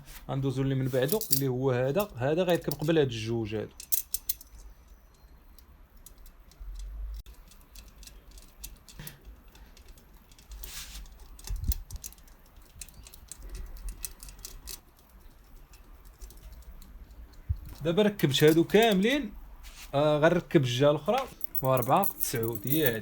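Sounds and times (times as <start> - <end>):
metal spokes clicking: 3.7 - 19.3
short scrape: 10.6 - 11.1.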